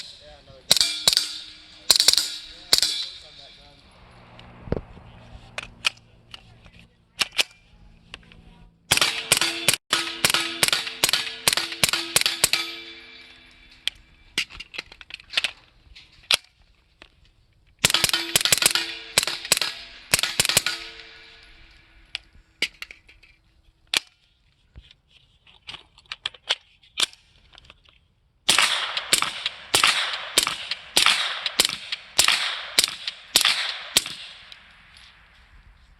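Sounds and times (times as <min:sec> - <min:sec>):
suppressed gunshots: 0:17.8 - 0:21.5, 0:28.5 - 0:34.6.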